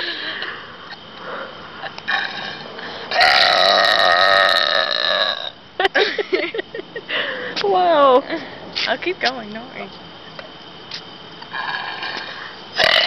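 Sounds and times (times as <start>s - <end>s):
woman burping: 2.1s - 5.6s, 12.8s - 13.0s.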